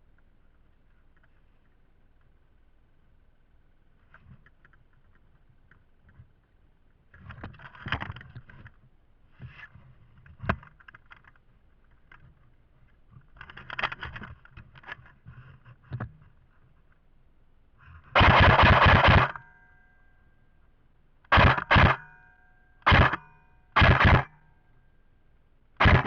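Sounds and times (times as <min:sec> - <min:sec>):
rustling and scraping handling noise: 0:00.1 - 0:02.4, 0:03.9 - 0:17.1, 0:17.8 - 0:18.2.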